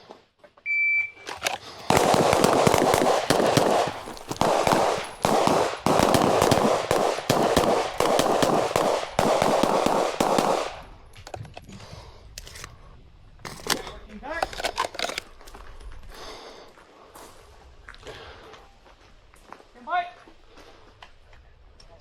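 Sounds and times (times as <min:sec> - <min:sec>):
pistol gunfire: 0:01.8 - 0:11.0.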